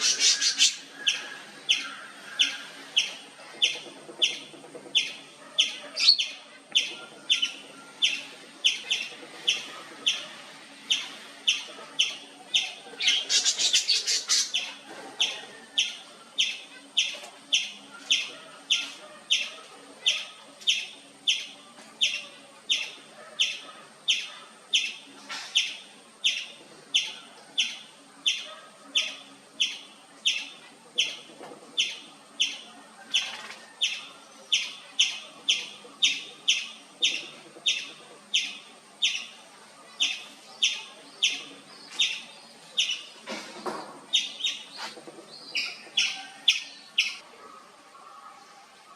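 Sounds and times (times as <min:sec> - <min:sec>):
squirrel chirping: 0:00.0 - 0:10.3, 0:15.8 - 0:39.4, 0:40.0 - 0:43.1, 0:44.1 - 0:44.7.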